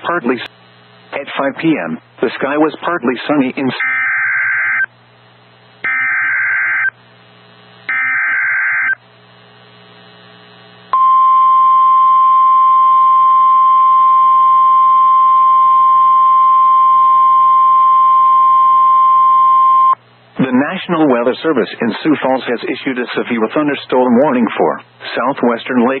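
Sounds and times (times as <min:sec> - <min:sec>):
steady warning alarm tone: 0:03.8 - 0:04.9, 0:05.8 - 0:07.0, 0:07.9 - 0:09.0, 0:11.0 - 0:20.0.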